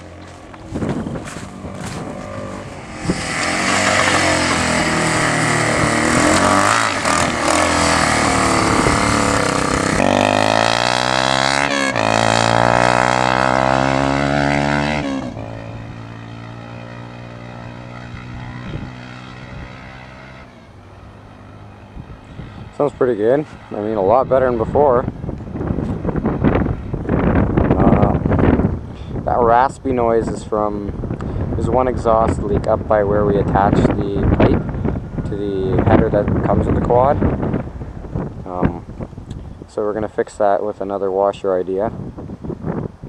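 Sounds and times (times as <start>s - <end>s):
raspy atv engine revving: 0.0s - 28.6s.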